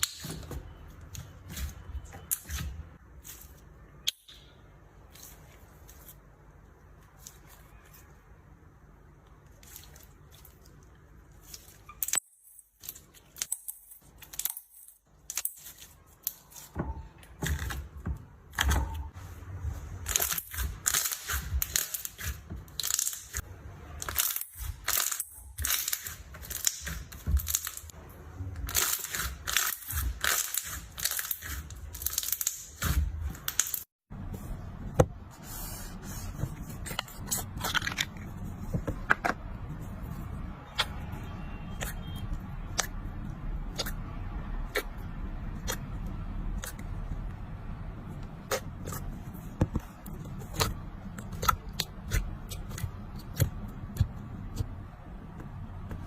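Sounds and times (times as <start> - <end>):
slime squishing and popping: 41.8 - 43.0, 43.6 - 44.0, 50.4 - 54.7.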